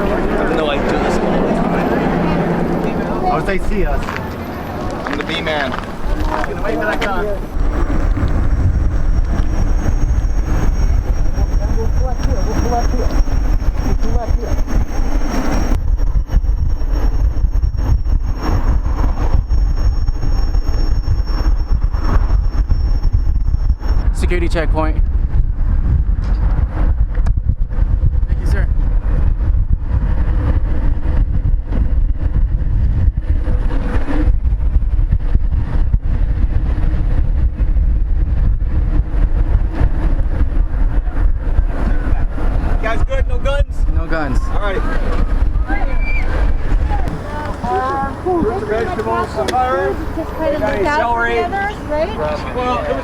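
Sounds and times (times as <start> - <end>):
road noise: 0.0 - 53.0
wind: 0.0 - 53.0.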